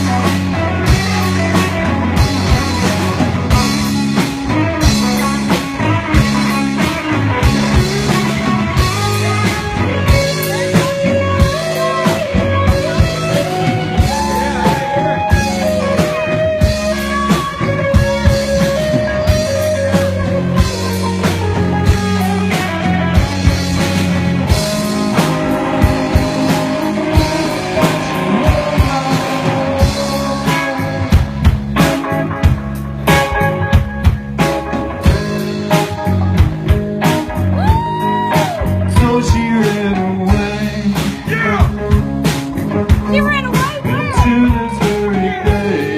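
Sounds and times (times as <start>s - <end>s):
bass and rhythm guitars: 0.0s - 45.9s
drum kit beat: 0.0s - 45.9s
lead guitar line: 0.0s - 45.9s.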